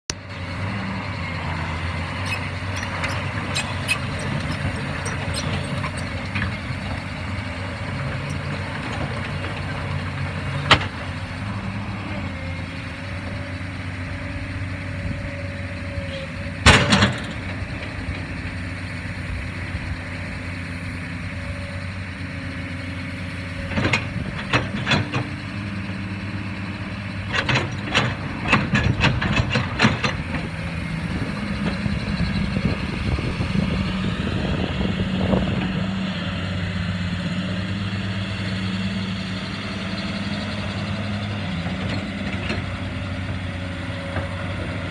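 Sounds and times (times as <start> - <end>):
excavator diesel engine running: 0.1 - 44.9.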